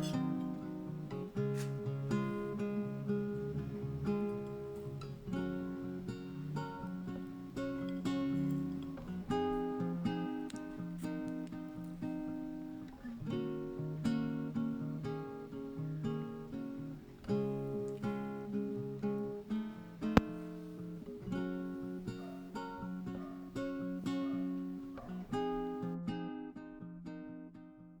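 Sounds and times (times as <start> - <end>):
acoustic guitar music: 0.0 - 28.0
sharp click: 20.1 - 20.5.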